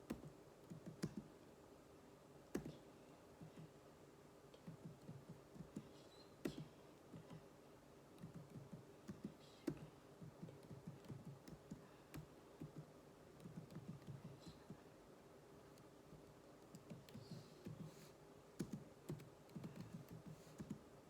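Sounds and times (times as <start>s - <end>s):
computer keyboard typing: 8.2s - 14.4s, 16.2s - 17.9s, 18.6s - 20.8s.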